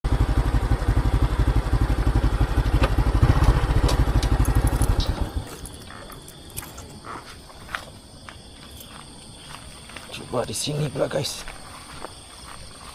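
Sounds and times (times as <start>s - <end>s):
small engine running: 0.1s - 5.8s.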